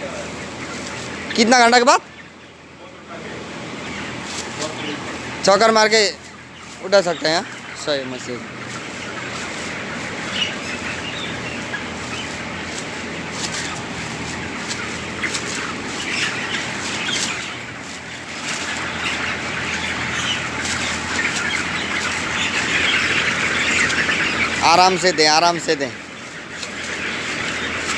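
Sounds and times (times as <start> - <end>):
chickens clucking: 0.0 - 27.9
wings flapping: 8.5 - 25.2.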